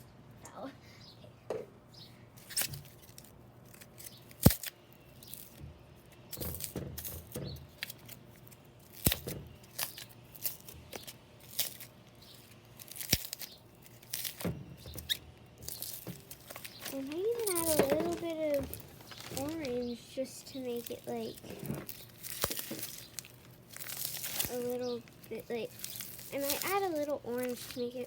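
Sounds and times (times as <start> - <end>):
slime crackling and squishing: 7.8 - 14.5, 15.6 - 28.0.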